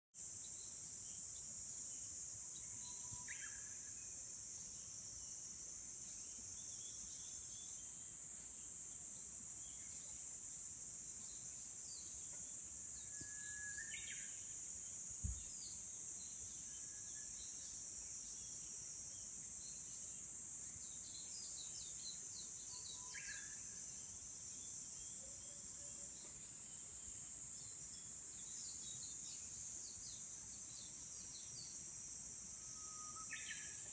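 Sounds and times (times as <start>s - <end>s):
high insect drone: 0.3s - 33.9s
faint chirps: 6.0s - 31.8s, 32.5s - 33.9s
low thump: 15.2s - 15.5s
bird song whistle and flourish: 32.7s - 33.9s.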